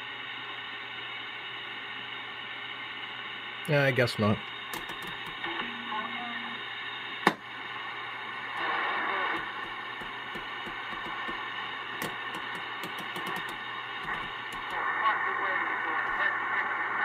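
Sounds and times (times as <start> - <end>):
radio static: 3.7 - 17.0
garbled radio voices: 8.6 - 9.6, 13.4 - 17.0.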